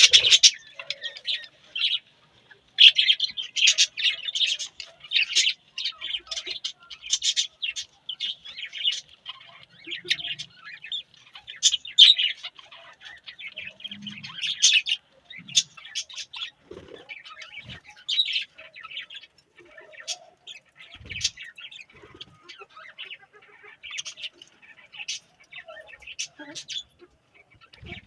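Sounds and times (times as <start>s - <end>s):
budgerigars chirping and chattering: 0.0s - 28.0s.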